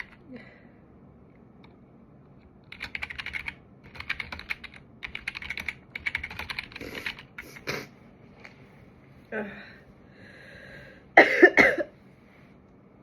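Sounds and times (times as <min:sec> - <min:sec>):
typing on computer keyboard: 0:00.0 - 0:00.2, 0:02.7 - 0:07.7.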